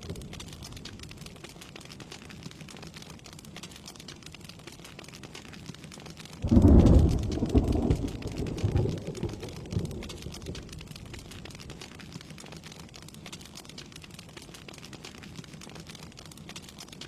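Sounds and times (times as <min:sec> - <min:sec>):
steady rain falling: 0:00.0 - 0:17.0
deep thunderclap rumbling: 0:06.4 - 0:11.8.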